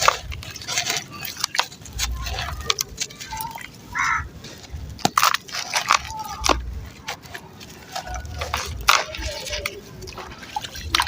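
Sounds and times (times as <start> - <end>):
cement chunks crumbling in water: 0.0 - 11.0.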